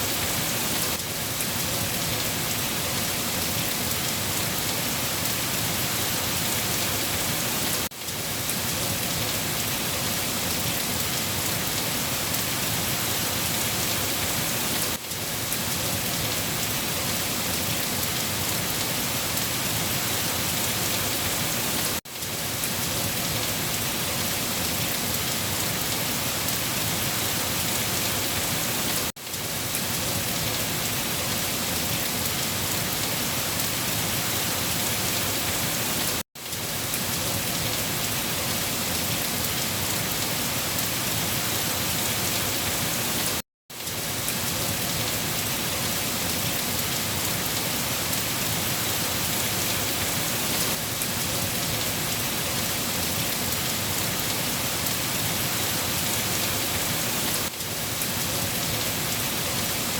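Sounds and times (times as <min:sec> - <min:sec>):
rain falling: 0:00.0 - 0:59.9.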